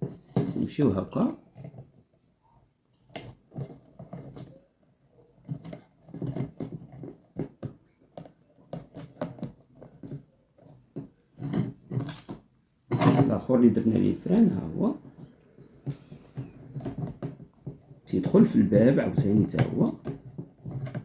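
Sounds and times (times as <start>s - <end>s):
wire rattling in plastic crate: 11.4s - 21.0s.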